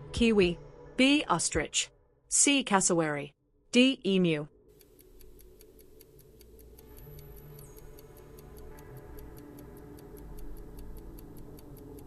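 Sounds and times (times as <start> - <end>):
quiet music bed: 3.8 - 12.0
clock ticking: 4.7 - 12.0.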